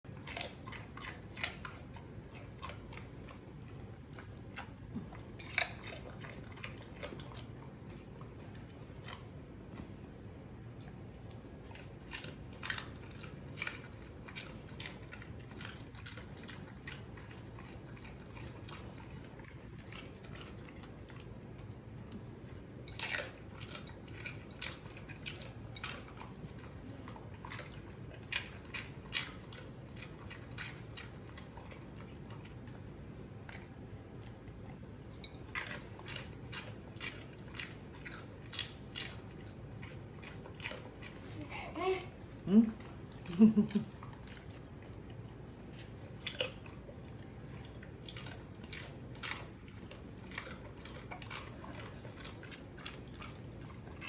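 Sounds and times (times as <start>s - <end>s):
crisp crunches of chewing pepper: 42.7s - 54.0s.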